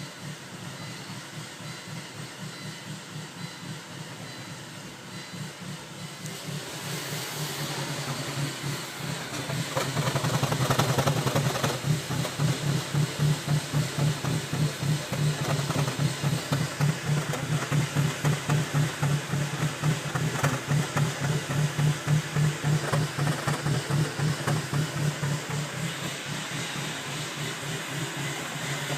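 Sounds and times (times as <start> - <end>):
car engine rough idle: 6.2 - 28.9.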